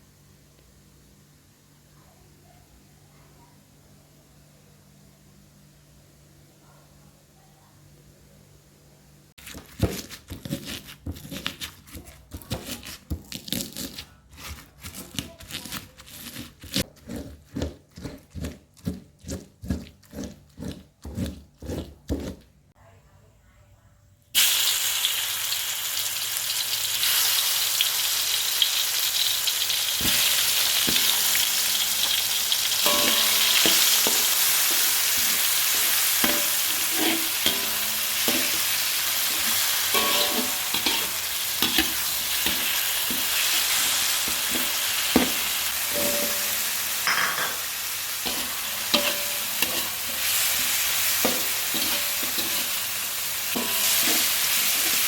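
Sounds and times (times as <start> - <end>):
utensil knocking and scraping pan: 9.4 - 22.5, 32.0 - 52.9, 53.5 - 55.0
food sizzling in oil: 24.4 - 55.0.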